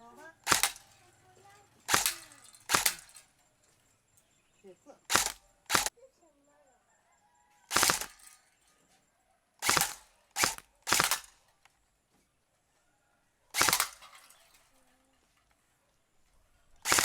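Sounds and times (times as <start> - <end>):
bb gun shots: 0.4 - 1.0, 1.9 - 3.3, 5.1 - 5.9, 7.7 - 8.4, 9.6 - 11.5, 13.6 - 14.5.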